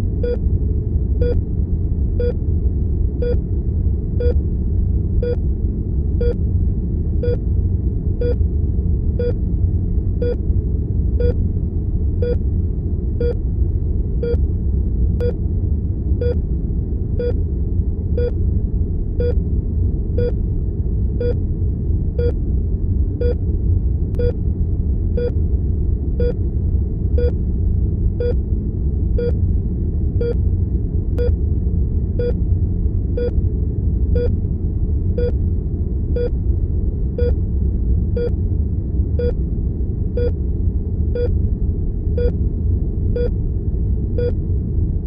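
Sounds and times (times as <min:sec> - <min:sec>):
low rumble of room tone: 0:00.0 - 0:45.0
heart monitor beeping: 0:23.2 - 0:23.4, 0:24.2 - 0:24.4, 0:30.2 - 0:30.4, 0:38.2 - 0:38.4, 0:42.2 - 0:42.4.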